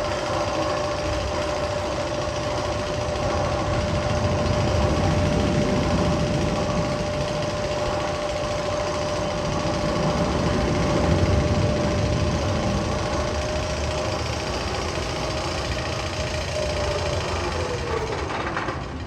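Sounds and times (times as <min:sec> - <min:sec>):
machine-like rattling rumble: 0:00.0 - 0:19.0.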